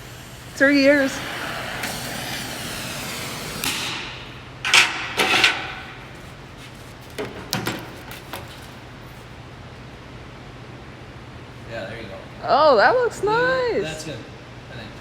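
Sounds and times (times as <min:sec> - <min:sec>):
tools knocking and scraping: 0:04.7 - 0:06.2.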